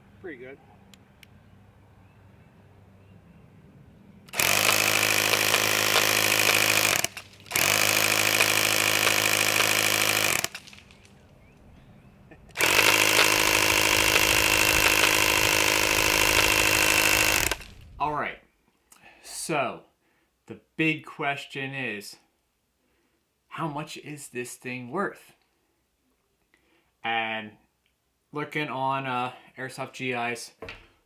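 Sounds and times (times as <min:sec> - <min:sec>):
airsoft gun full-auto buzz: 0:04.3 - 0:11.1, 0:12.5 - 0:18.1.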